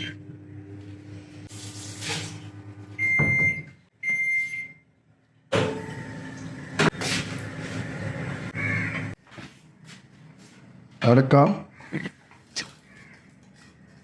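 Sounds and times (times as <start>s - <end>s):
microwave oven humming: 0.0s - 4.8s, 5.5s - 9.2s.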